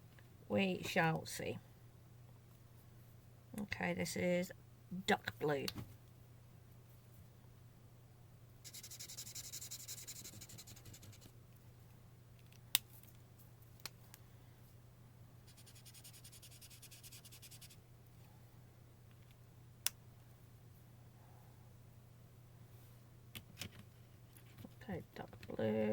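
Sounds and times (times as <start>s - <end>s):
marker scribbling on paper: 8.7s - 11.3s, 15.5s - 17.8s.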